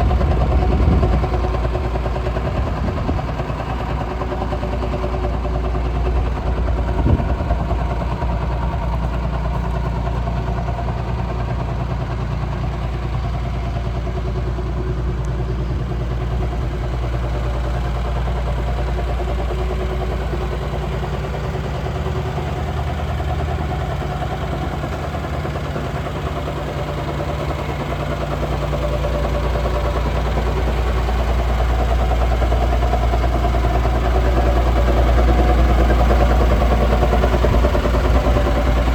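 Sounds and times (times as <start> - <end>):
excavator diesel engine idling: 0.0 - 38.9.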